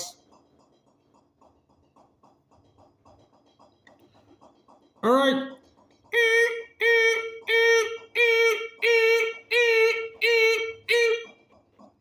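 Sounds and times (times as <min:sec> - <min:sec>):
person imitating beeping: 0:06.1 - 0:11.4.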